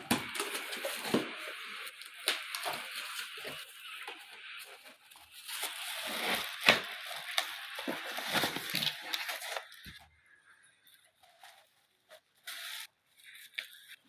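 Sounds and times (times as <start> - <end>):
packaging crinkling and tearing: 0.0 - 10.0.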